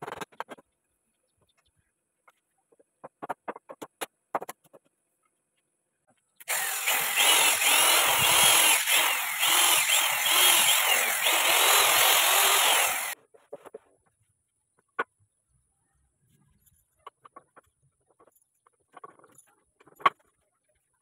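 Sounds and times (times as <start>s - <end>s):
power tool cutting or grinding: 6.4s - 13.2s.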